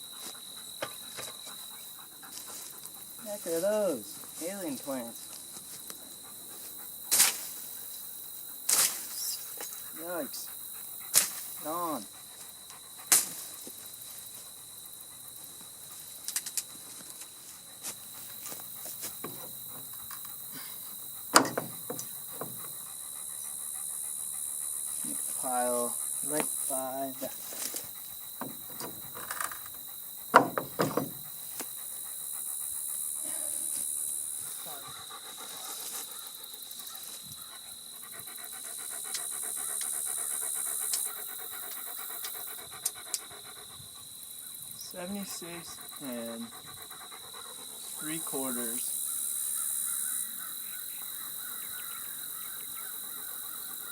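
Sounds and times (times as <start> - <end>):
dog panting rapidly: 0.0 - 8.7, 9.4 - 44.5, 45.1 - 49.0
insects trilling: 0.0 - 53.9
scattered clicks and knocks: 21.3 - 22.8, 28.4 - 31.7.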